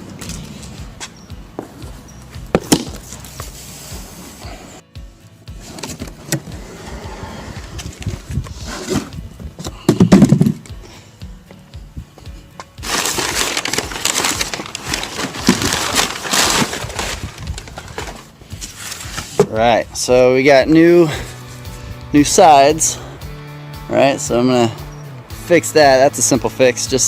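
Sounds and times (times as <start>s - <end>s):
music playing: 0.0s - 27.0s
packing material rustling: 12.8s - 19.4s.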